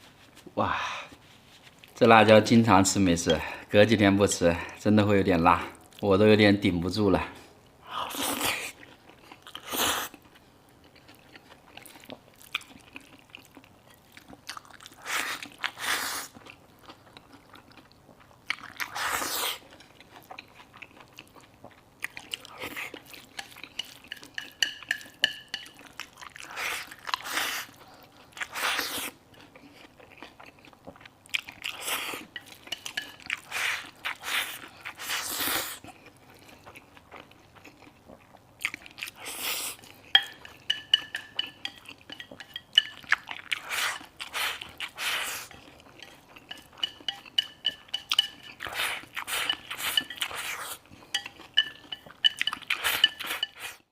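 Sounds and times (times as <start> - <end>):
chewing and biting: 8.6 - 24.4.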